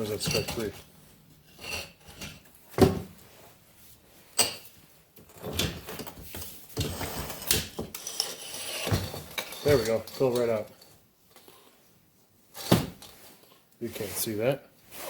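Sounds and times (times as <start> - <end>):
metal tools clattering and scraping: 0.0 - 2.5, 4.4 - 11.5.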